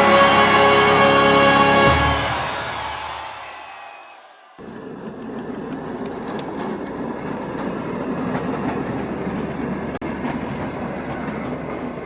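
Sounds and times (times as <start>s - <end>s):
train rumbling on rails: 4.6s - 12.0s.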